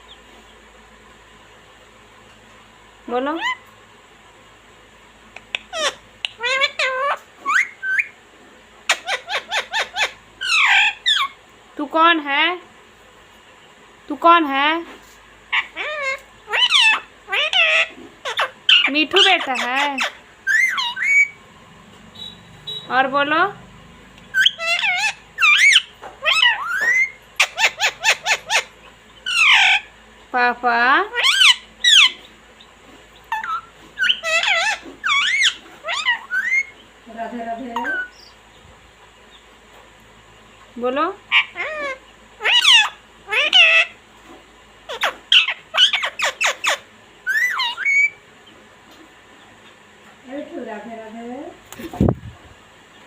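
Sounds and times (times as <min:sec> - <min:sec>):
parrot squawking and chirping: 0:03.2 - 0:03.7, 0:05.5 - 0:08.2, 0:08.9 - 0:11.4, 0:15.5 - 0:21.4, 0:24.2 - 0:30.0, 0:30.9 - 0:37.0, 0:37.7 - 0:38.5, 0:41.2 - 0:44.0, 0:44.8 - 0:48.3.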